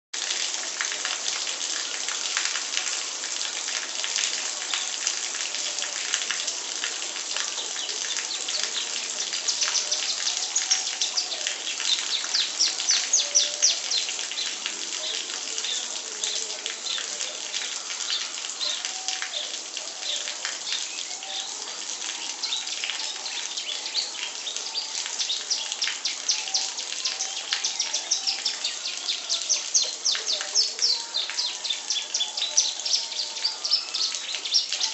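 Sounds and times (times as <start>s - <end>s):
rain hiss: 0.2s - 34.9s
songbird chirping and trilling: 7.4s - 34.9s.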